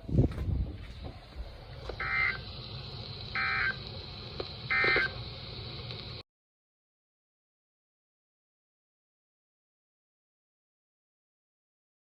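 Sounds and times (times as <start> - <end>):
radio hiss: 0.9 - 6.2
digital data tone bursts: 2.0 - 2.5, 3.3 - 3.9, 4.6 - 5.3.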